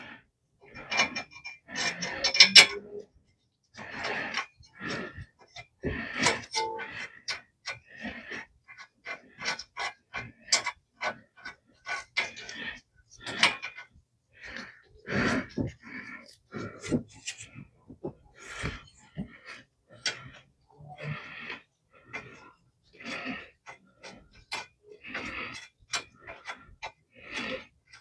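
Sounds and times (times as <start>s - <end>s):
brief ringing note: 6.6s - 7.0s.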